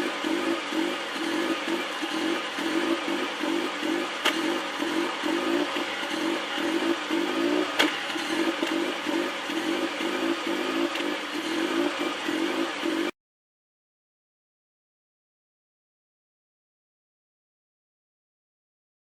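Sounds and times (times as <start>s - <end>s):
car engine idling roughly: 0.0s - 13.1s.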